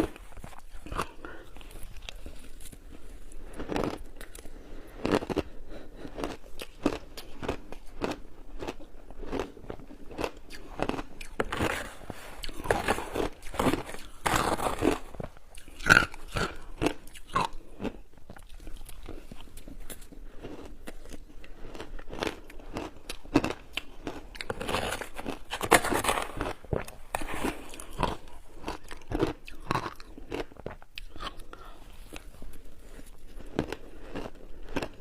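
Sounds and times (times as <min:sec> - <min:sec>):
crunching and chewing ice: 0:00.0 - 0:35.0.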